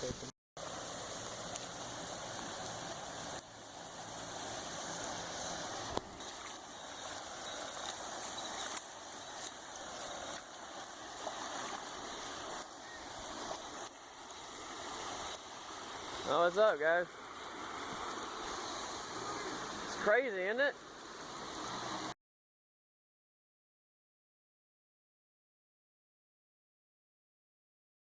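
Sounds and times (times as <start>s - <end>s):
rushing floodwater: 0.0s - 22.2s.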